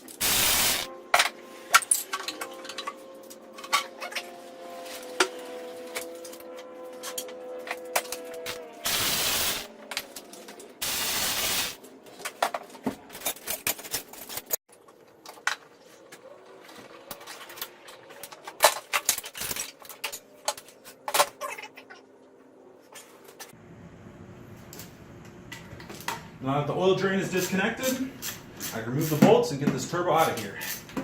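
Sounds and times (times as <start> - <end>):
loud hiss: 0.0 - 0.9, 8.8 - 9.7, 10.8 - 11.8.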